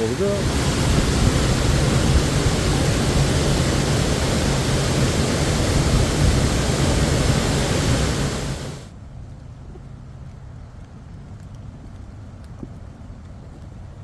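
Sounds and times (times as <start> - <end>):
loud steady rushing noise: 0.0 - 8.9.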